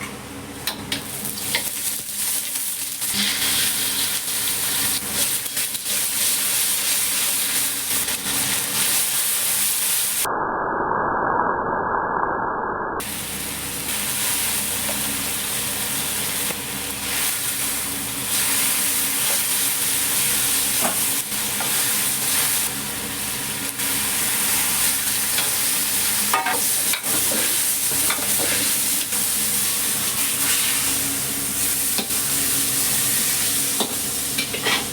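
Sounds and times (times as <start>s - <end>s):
food sizzling in a pan: 0.9s - 10.3s, 13.0s - 34.9s
utensil scraping a pan: 34.4s - 34.9s.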